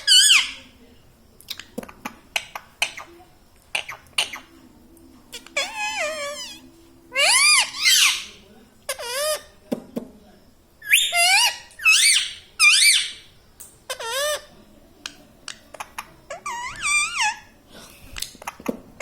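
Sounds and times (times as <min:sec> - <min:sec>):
parrot squawking: 0:00.0 - 0:00.6, 0:03.8 - 0:04.5, 0:05.3 - 0:09.5, 0:10.8 - 0:13.3, 0:16.3 - 0:17.4.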